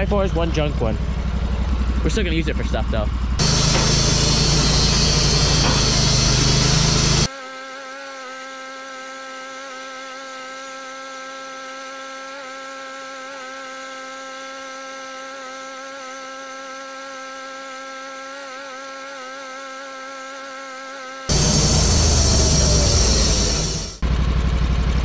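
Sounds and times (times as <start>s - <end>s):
band sawmill whine: 0.0s - 7.3s, 21.3s - 25.0s.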